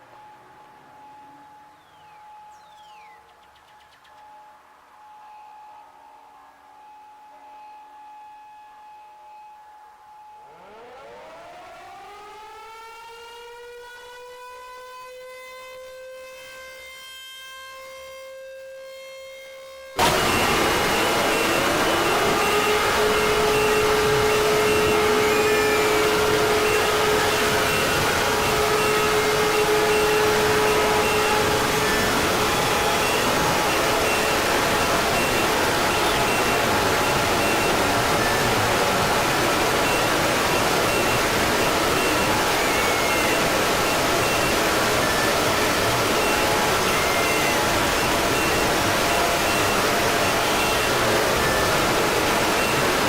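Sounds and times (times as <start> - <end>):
held alarm tone: 0.0 - 3.2, 4.3 - 53.0
faint high beeps: 0.0 - 8.4, 20.0 - 53.0
distorted roar of noise: 10.4 - 14.6, 19.9 - 53.0.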